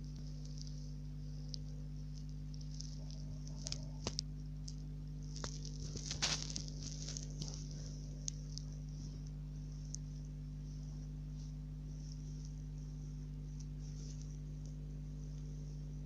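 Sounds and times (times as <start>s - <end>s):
low electrical hum: 0.0s - 16.0s
small clicks: 0.2s - 10.4s.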